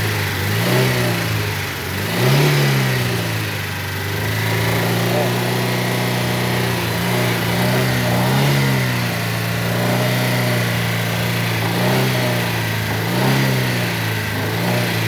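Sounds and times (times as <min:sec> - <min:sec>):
car engine running rough near idle: 0:00.0 - 0:15.0
engine knocking: 0:00.0 - 0:15.0.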